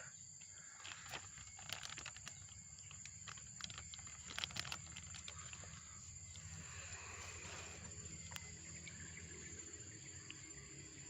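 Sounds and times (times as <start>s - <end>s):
small clicks and rustles: 0.4s - 6.6s, 7.2s - 8.5s
high-pitched insect drone: 5.4s - 11.0s.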